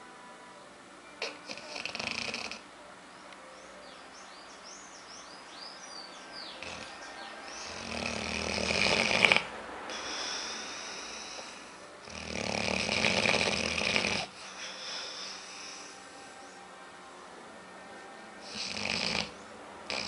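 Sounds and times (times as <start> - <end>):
dog snoring heavily: 1.2 - 2.7, 6.5 - 16.2, 18.4 - 20.0.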